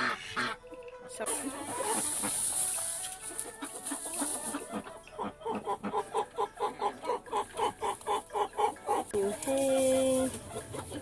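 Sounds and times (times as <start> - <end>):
quail clucking call: 3.2 - 9.2.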